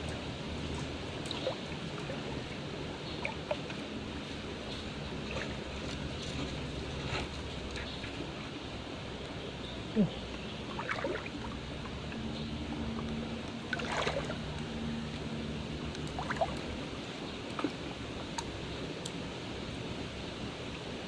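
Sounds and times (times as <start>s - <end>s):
water plops: 0.0s - 2.2s, 10.7s - 12.0s, 12.9s - 15.3s, 15.9s - 16.7s
water trickling and gurgling: 0.0s - 21.0s.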